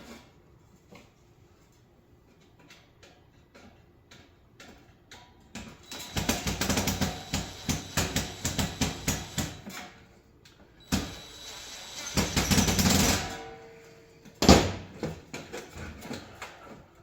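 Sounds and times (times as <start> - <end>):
sharp metallic knocks and rattles: 12.0 - 13.6.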